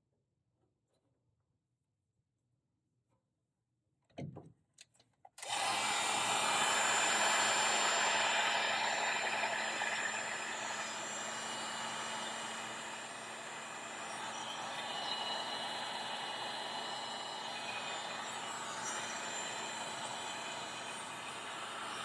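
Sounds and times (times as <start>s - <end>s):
vacuum motor whooshing: 5.4s - 22.0s.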